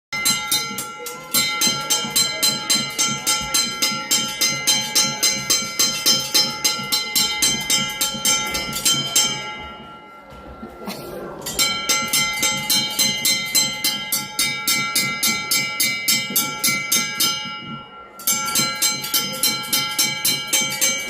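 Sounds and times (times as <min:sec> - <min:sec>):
railroad crossing bell ringing: 0:00.2 - 0:10.8, 0:11.4 - 0:21.0.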